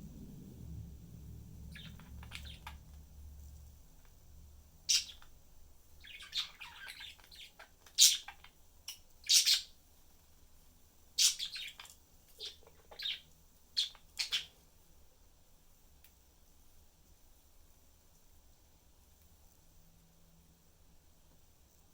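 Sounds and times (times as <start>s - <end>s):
budgerigars chirping: 1.6s - 2.9s, 4.8s - 5.3s, 6.0s - 9.7s, 11.2s - 13.2s, 13.8s - 14.6s.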